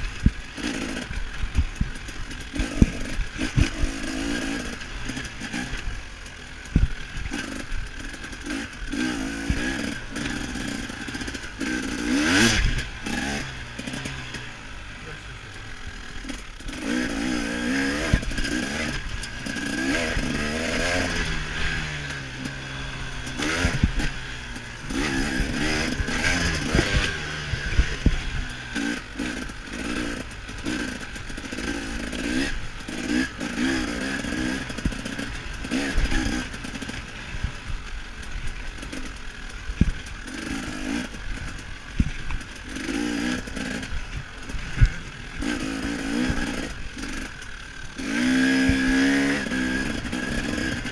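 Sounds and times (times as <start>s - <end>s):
dirt bike engine revving: 0.0s - 50.9s.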